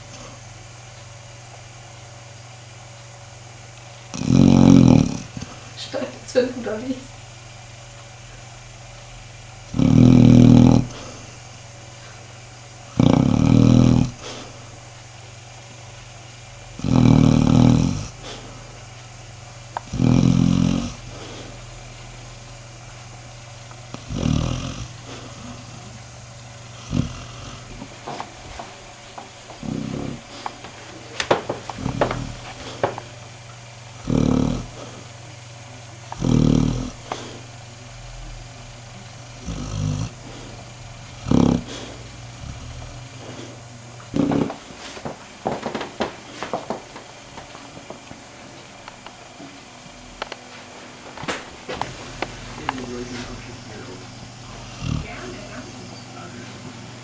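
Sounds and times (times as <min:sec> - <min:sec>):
dog snoring: 0:04.1 - 0:06.1, 0:09.6 - 0:12.2, 0:12.9 - 0:15.1, 0:16.7 - 0:18.9, 0:19.8 - 0:22.2, 0:23.8 - 0:33.2, 0:33.9 - 0:35.2, 0:36.0 - 0:47.0, 0:51.6 - 0:56.5.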